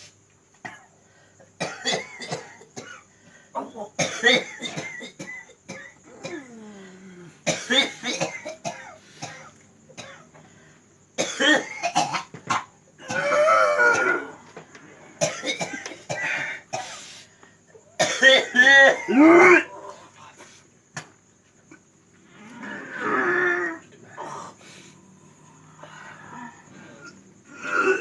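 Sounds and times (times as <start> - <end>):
man coughing hard: 1.6 - 3.0, 4.0 - 6.4, 7.5 - 10.2, 11.2 - 14.2, 15.2 - 16.9, 18.0 - 19.7
man groaning: 19.1 - 19.8.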